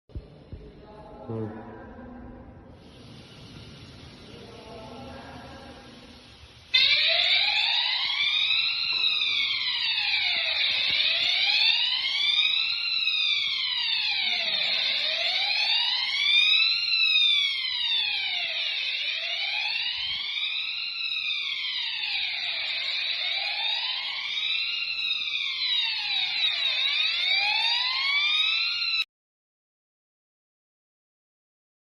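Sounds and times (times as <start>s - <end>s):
faint hiss: 2.6s - 6.8s
fire alarm siren wailing: 4.2s - 29.1s.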